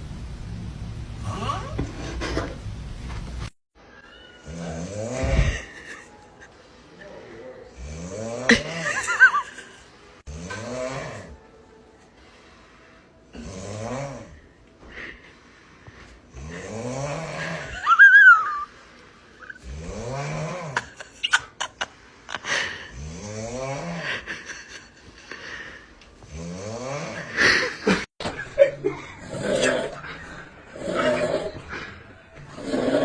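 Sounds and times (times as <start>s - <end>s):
person snoring: 4.4s - 6.0s, 7.4s - 9.4s, 10.3s - 11.4s, 13.3s - 14.4s, 16.3s - 18.7s, 19.4s - 21.2s, 22.4s - 28.1s.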